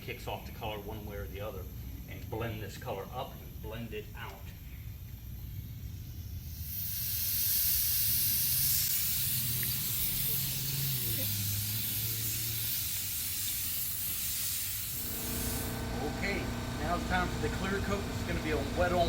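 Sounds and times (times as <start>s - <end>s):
paint spray gun hissing: 6.0s - 19.0s.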